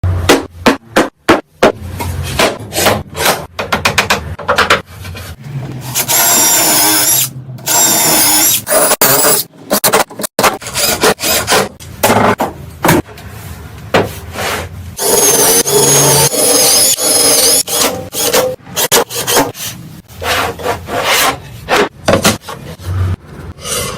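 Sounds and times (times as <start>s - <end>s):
power tool cutting wood: 5.8s - 9.4s, 15.0s - 19.6s.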